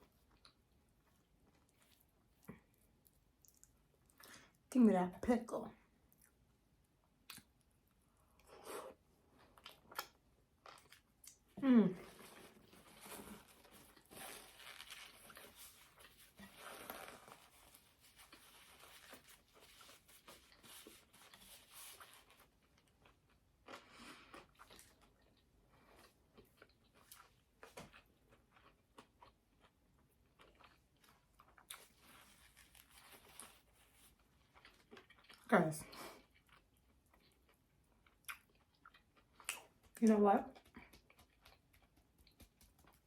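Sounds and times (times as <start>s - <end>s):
person chewing crunchy food: 7.2s - 43.0s.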